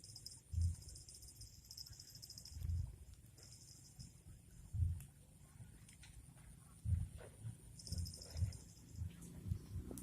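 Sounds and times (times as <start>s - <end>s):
pulsing insect-like trill: 0.0s - 4.8s, 7.7s - 9.8s.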